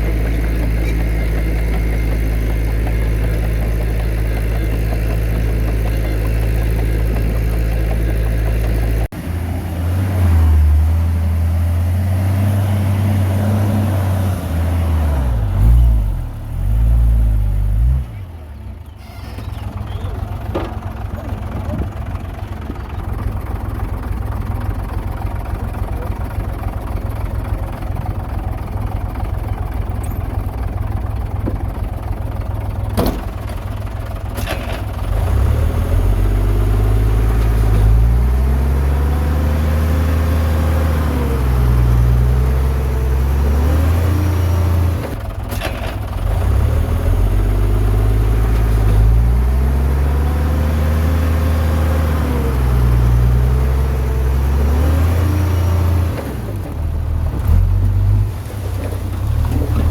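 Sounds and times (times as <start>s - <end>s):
heavy diesel engine revving: 0.0s - 18.3s, 34.9s - 45.4s, 46.1s - 58.4s.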